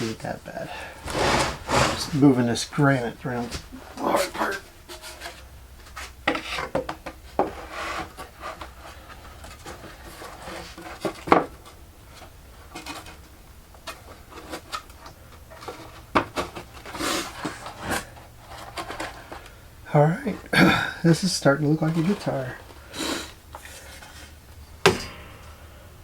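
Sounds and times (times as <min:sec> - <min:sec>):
wood scraping on sandpaper: 0:01.0 - 0:02.6, 0:07.4 - 0:09.2.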